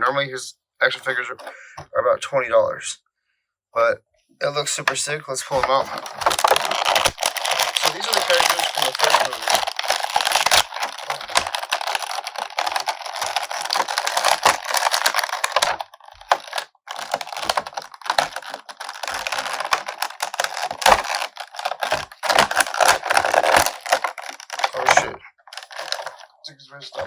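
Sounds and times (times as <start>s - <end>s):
plastic packaging crackling: 5.5s - 27.0s.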